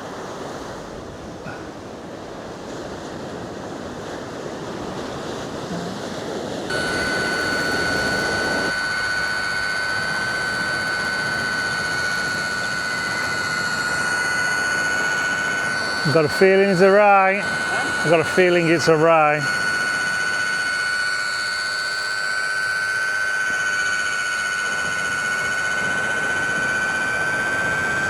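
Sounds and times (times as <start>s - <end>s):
drone motors whining: 6.6s - 28.0s.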